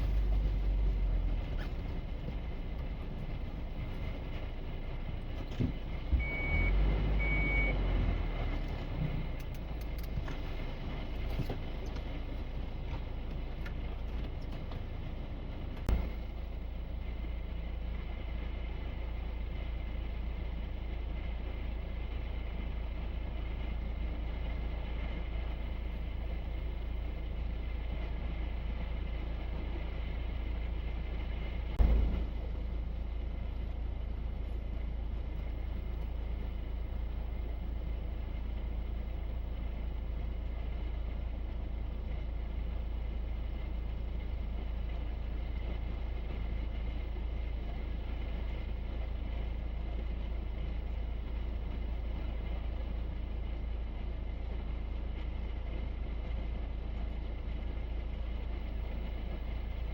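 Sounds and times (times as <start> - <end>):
truck driving rumble: 0.0 - 59.9.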